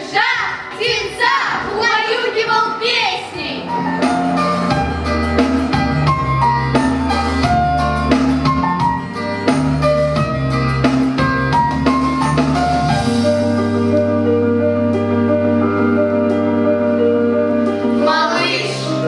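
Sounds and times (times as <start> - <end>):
instrumental music with beat: 3.6 - 18.0.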